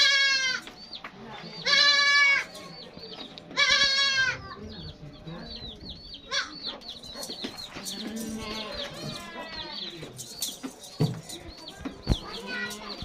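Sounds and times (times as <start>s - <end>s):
goat bleating: 0.0s - 0.7s, 1.6s - 2.5s, 3.6s - 4.4s, 6.3s - 6.5s, 7.9s - 9.9s
small birds chirping: 0.0s - 13.0s.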